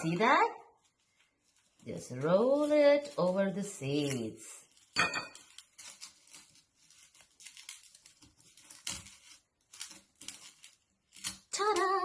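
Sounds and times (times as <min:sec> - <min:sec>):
bird seeds rustling and crackling: 0:00.0 - 0:12.0.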